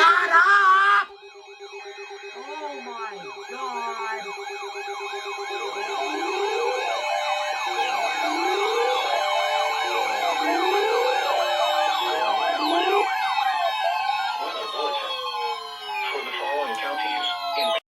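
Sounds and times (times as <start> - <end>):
fast yelping siren: 0.0 - 17.8
steady siren tone: 0.0 - 17.8
wailing siren: 0.0 - 17.8.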